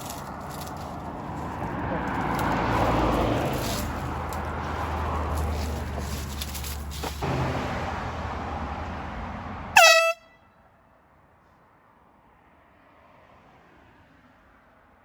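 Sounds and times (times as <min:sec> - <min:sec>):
handheld air horn blast: 0:09.8 - 0:10.4.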